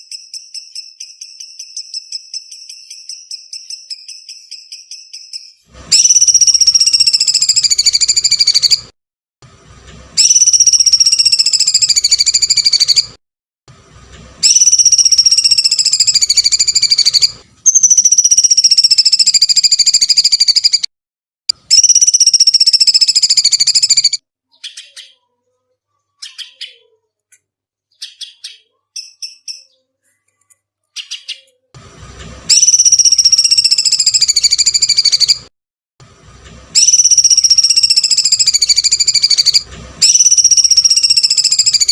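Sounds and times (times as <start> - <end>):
short bird chirps: 0.0 - 8.9, 14.4 - 20.9, 21.5 - 31.7, 32.5 - 35.5, 36.8 - 41.9
songbird shrill pulsed trills: 14.4 - 20.8, 36.8 - 41.9.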